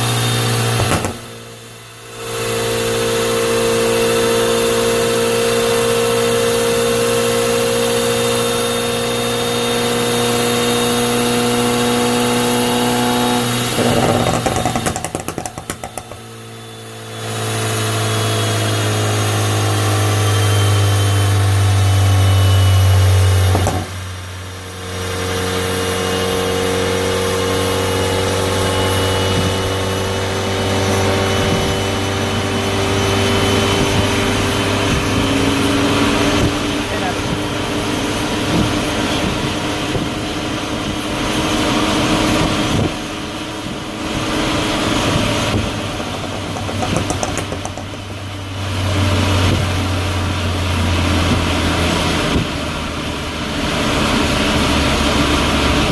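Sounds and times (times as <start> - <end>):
deep steady engine drone: 0.0 - 55.9
turbocharged engine running on a dyno: 0.0 - 55.9
exhaust crackles and pops: 0.7 - 1.4, 13.4 - 16.4, 45.0 - 49.9.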